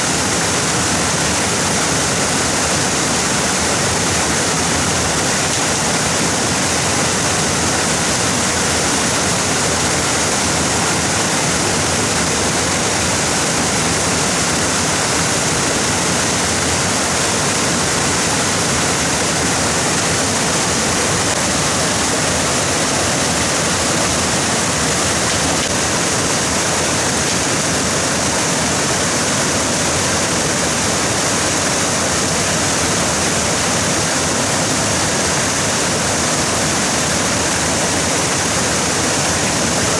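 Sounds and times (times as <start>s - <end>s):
stream water rushing: 0.0s - 39.9s.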